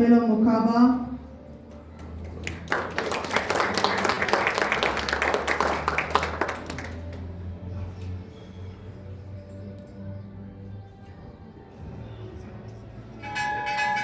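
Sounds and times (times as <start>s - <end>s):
audience applauding: 2.0s - 7.3s.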